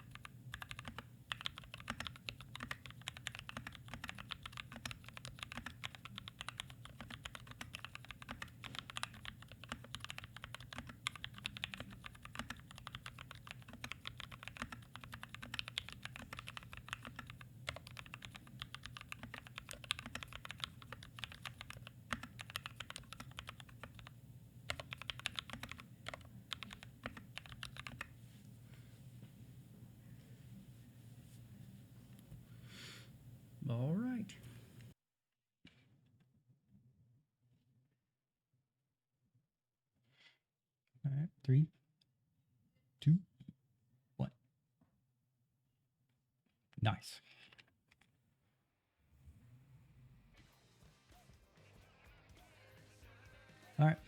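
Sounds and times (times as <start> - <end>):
fast mechanical keyboard typing: 0.0 - 24.1, 24.7 - 28.1.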